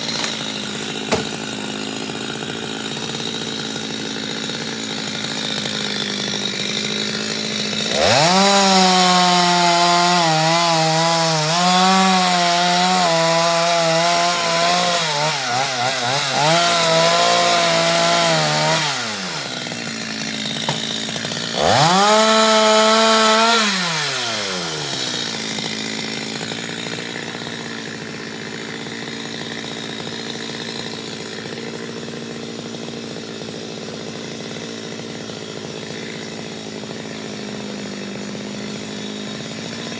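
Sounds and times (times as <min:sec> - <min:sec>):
chainsaw idling and revving: 0:00.0 - 0:39.9.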